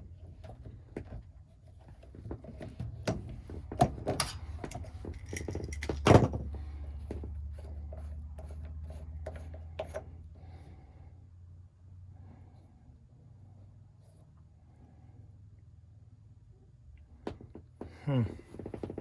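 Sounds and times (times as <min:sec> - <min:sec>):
tools clicking and knocking: 0:03.8 - 0:06.3.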